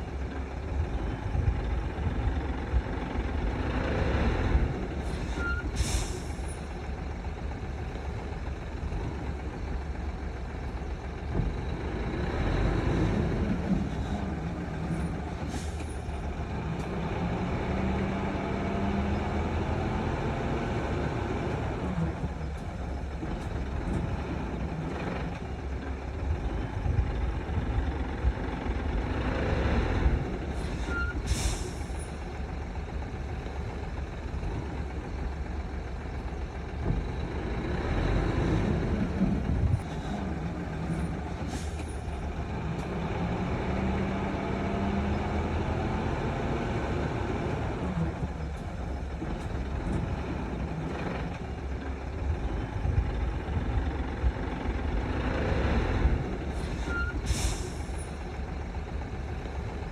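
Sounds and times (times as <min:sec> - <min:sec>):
heavy diesel engines running: 0:00.0 - 0:59.9.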